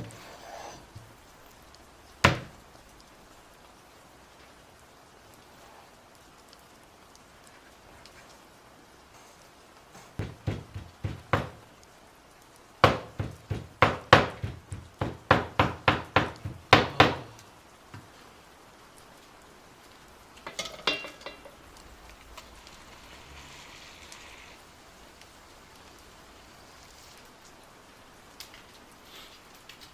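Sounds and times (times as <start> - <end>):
heavy knocks on work surface: 2.2 - 2.6, 10.2 - 11.6, 12.8 - 17.3
dishes clattering: 20.4 - 21.6.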